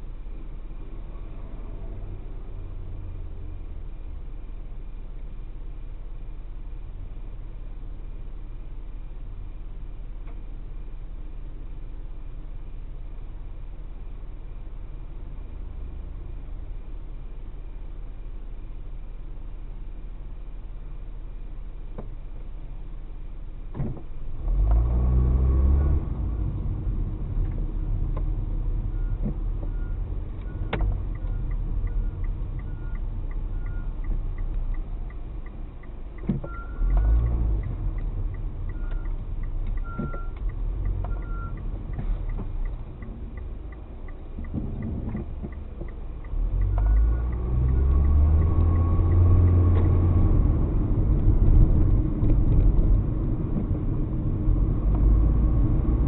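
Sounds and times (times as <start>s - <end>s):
car engine and road rumble: 0.0s - 56.0s
fast light ticking: 30.3s - 50.0s.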